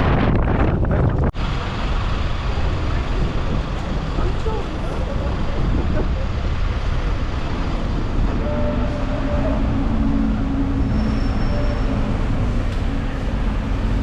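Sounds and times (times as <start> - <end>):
street traffic: 0.0 - 14.0
wind on microphone: 0.0 - 14.0
passing vehicle engine hum: 1.4 - 14.0.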